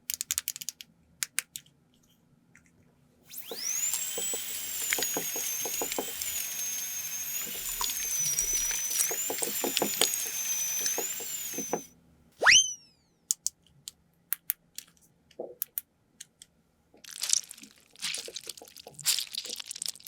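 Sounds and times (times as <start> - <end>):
plastic clicks and rattles: 0.0 - 1.8, 13.3 - 16.5
small motor whining: 3.3 - 12.8.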